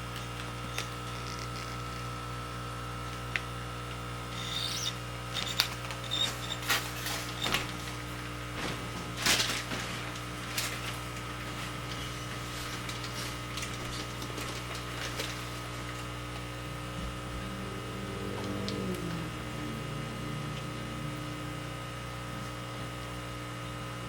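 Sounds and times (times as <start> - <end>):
steady hum: 0.0 - 24.0
plastic bags crinkling: 6.6 - 16.6.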